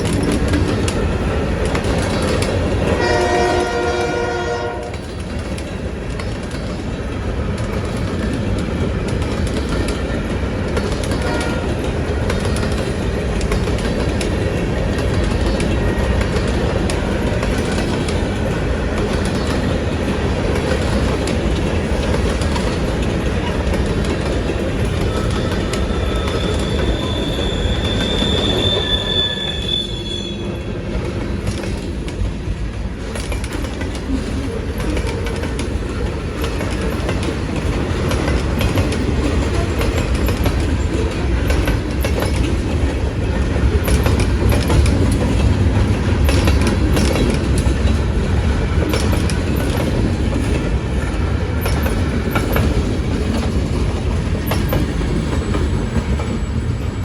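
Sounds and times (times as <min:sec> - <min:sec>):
freight cars rumbling: 0:00.0 - 0:57.0
wheels clattering on rails: 0:00.0 - 0:57.0
high brake squeal: 0:25.1 - 0:30.7.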